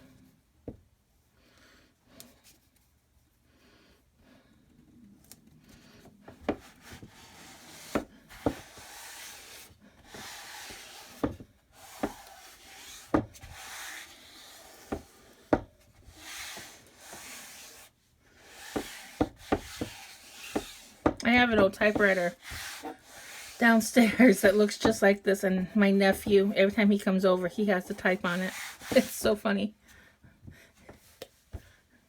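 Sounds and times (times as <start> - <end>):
hands rubbing adhesive stencil: 6.5 - 24.9.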